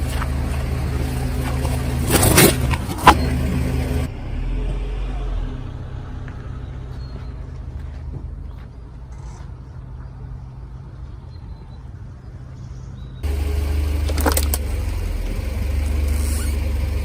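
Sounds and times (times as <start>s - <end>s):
car engine running: 0.0s - 9.2s, 13.2s - 17.0s.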